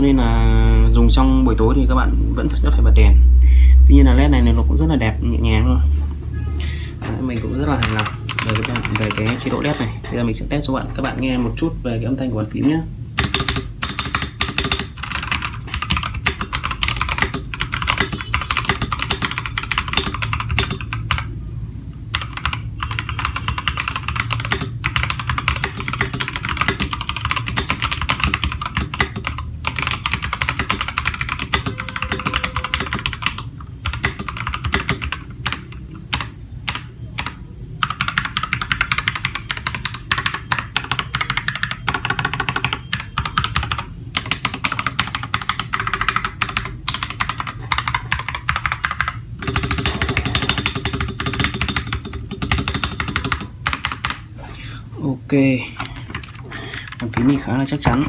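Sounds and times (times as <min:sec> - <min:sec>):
mechanical keyboard typing: 0:07.2 - 0:10.0, 0:13.2 - 0:21.3, 0:22.1 - 0:54.3, 0:55.8 - 0:58.0.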